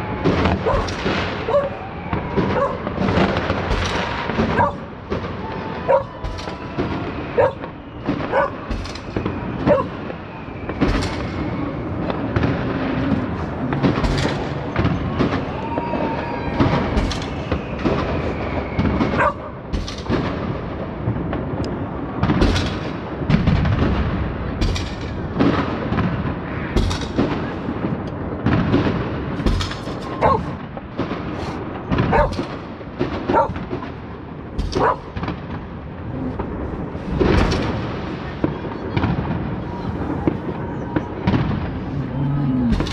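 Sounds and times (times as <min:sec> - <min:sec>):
fireworks bangs and crackles: 0:00.0 - 0:42.9
rumble of distant explosions: 0:00.0 - 0:42.9
whistling rockets: 0:00.0 - 0:42.9
dog barking: 0:00.6 - 0:00.9, 0:01.5 - 0:01.8, 0:02.5 - 0:02.8, 0:04.6 - 0:04.9, 0:05.9 - 0:06.2, 0:07.4 - 0:07.6, 0:08.3 - 0:08.6, 0:09.6 - 0:10.0, 0:19.2 - 0:19.5, 0:30.1 - 0:30.6, 0:32.0 - 0:32.4, 0:33.3 - 0:33.6, 0:34.8 - 0:35.1.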